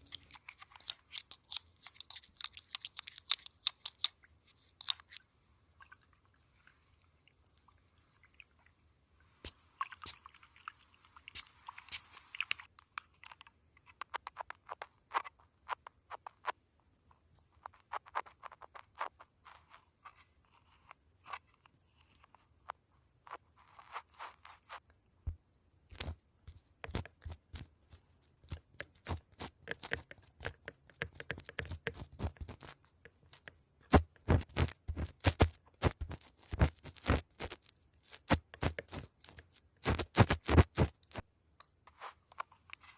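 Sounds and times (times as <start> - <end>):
makeup items clicking and tapping: 0.3 - 4.2
soft scratchy rubbing: 4.1 - 12.7, 13.8 - 24.8, 26.0 - 42.9.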